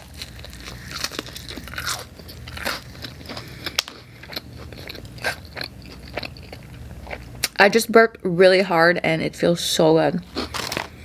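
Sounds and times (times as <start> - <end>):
crunchy chewing: 0.0 - 7.6, 10.3 - 11.0.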